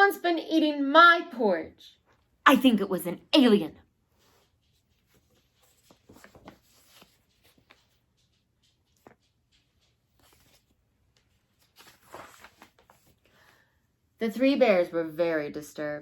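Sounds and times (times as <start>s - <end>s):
book pages turning: 4.2s - 13.6s.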